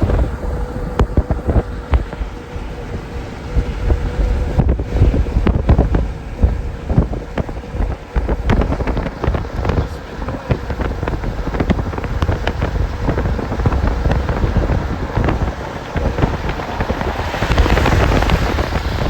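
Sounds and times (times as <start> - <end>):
moving vehicle rumble: 0.0 - 19.0
wind buffeting microphone: 0.0 - 19.0.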